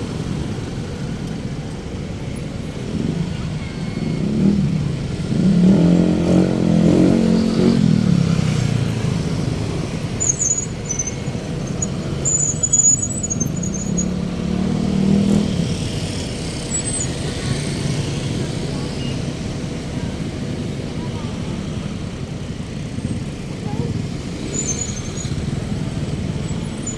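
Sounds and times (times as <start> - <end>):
steady traffic hum: 0.0 - 26.9
vehicles passing: 0.0 - 26.9.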